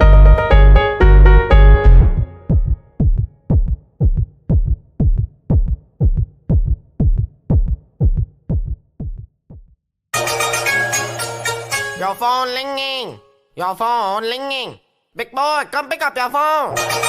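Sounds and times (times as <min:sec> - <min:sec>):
drum machine hit: 0:00.0 - 0:09.7.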